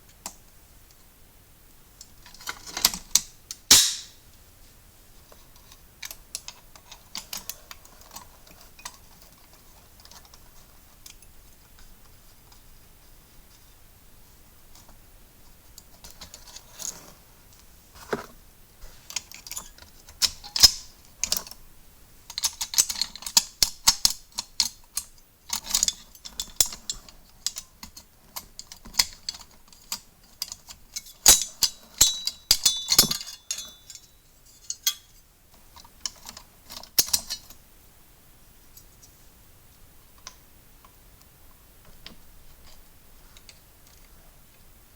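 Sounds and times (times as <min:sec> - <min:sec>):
typewriter parts clicking and clinking: 0:28.6 - 0:34.1.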